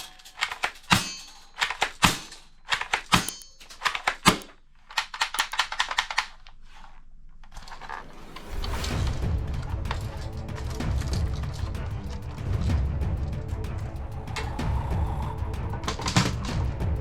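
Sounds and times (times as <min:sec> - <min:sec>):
toy guns clicking and snapping: 0:00.0 - 0:06.6, 0:15.8 - 0:16.6.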